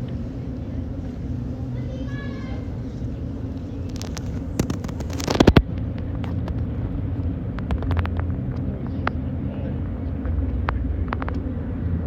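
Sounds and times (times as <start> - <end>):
low rumble and hum: 0.0 - 12.0
sharp clicks and knocks: 3.9 - 9.2, 10.2 - 11.5.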